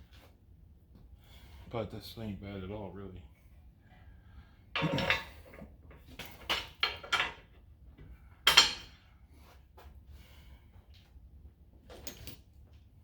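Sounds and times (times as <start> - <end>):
metal hardware clanking: 4.8 - 5.6.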